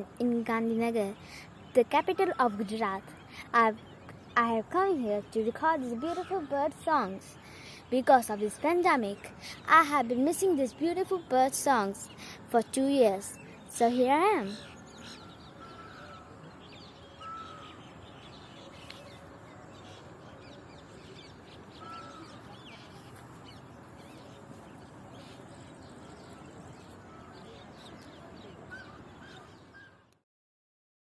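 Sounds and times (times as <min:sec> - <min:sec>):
small birds chirping: 0:00.0 - 0:30.2
louder bird calls: 0:14.5 - 0:19.2, 0:19.8 - 0:23.6.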